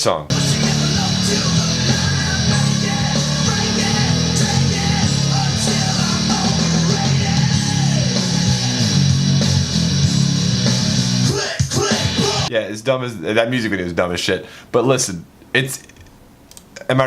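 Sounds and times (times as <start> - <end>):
bass guitar: 0.3 - 12.5
distorted electric guitar: 0.3 - 12.5
rap-rock music: 0.3 - 12.5.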